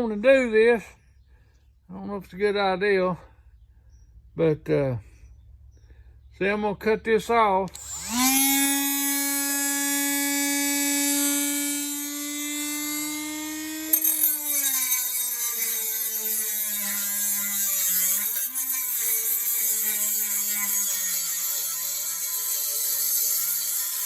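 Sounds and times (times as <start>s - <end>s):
rotary tool grinding metal pipe: 7.7s - 24.0s
rotary tool whining: 7.7s - 24.0s.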